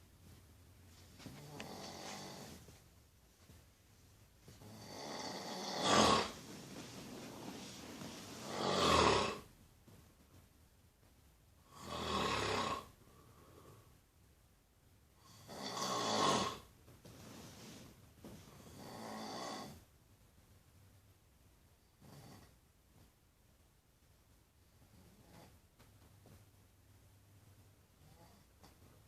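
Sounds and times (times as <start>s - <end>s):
quiet breathing: 0.2s - 9.6s, 11.6s - 14.2s
person snoring: 4.6s - 6.5s, 8.4s - 9.5s, 11.7s - 13.0s, 15.3s - 16.7s, 18.6s - 19.8s.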